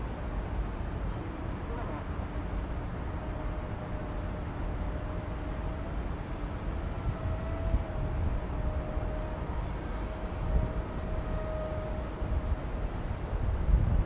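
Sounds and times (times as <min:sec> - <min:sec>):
distant model plane motor whine: 0:00.5 - 0:14.0
wind buffeting microphone: 0:06.9 - 0:14.0.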